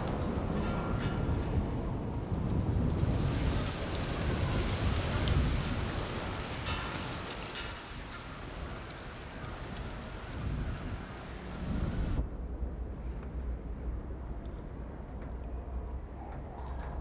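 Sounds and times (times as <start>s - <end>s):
steady rain: 0.0s - 12.2s
low rolling thunder: 0.0s - 12.8s.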